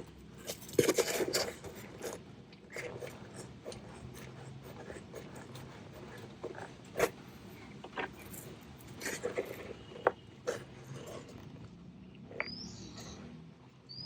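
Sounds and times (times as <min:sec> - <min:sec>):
bolts clicking and scraping: 0:00.0 - 0:13.2.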